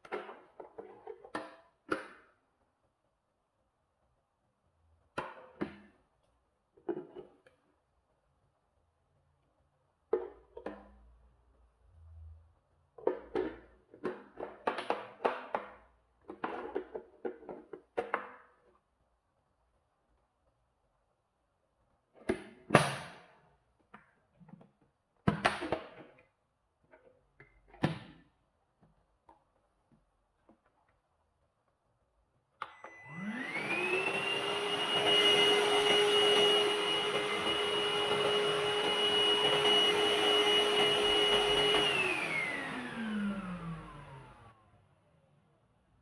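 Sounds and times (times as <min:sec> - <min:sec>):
vacuum cleaner motor whine: 0:32.6 - 0:45.5.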